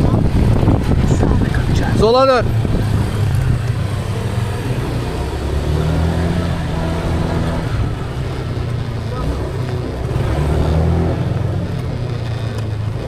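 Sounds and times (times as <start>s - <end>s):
car engine and road drone: 0.0s - 13.0s.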